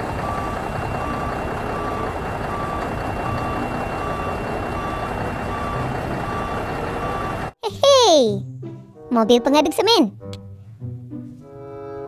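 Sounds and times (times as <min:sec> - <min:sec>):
low engine rumble: 0:00.0 - 0:07.6
truck reversing alarm beeping: 0:00.0 - 0:07.6.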